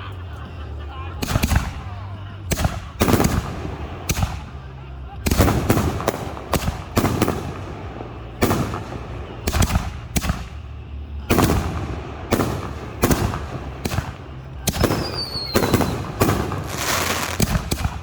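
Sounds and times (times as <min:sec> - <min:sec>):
fireworks booming: 0:00.0 - 0:18.0
falling firework whistle: 0:14.8 - 0:17.6.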